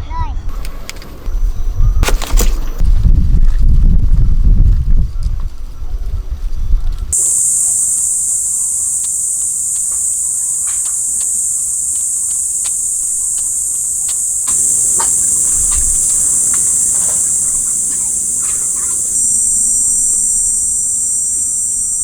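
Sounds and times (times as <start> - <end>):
high-pitched insect chorus: 7.2 - 22.0
short clicks and chirps: 7.2 - 22.0.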